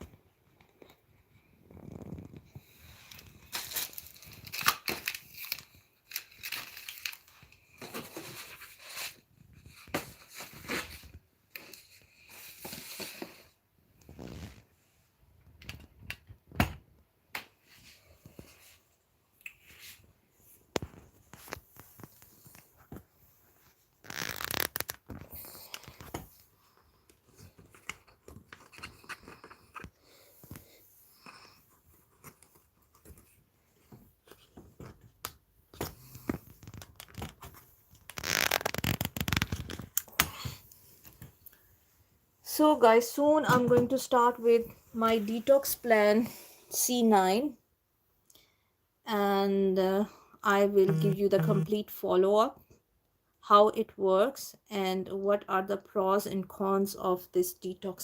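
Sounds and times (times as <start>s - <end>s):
packaging crinkling and rustling: 1.8s - 13.2s, 20.8s - 26.5s, 31.9s - 41.6s.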